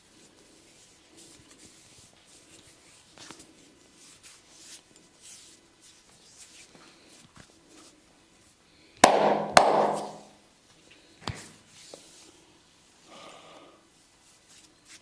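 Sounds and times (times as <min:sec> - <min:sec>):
massage strokes rubbing skin: 0:00.0 - 0:08.0.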